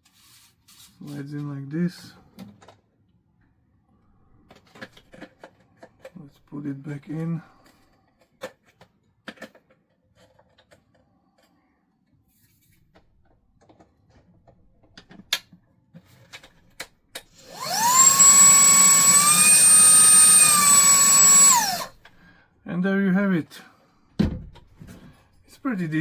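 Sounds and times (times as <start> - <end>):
handheld vacuum motor whine: 17.4 - 22.0.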